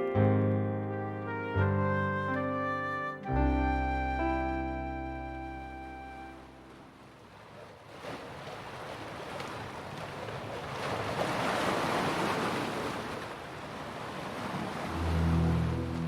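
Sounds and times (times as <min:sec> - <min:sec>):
ocean surf washing in: 0:10.9 - 0:16.0.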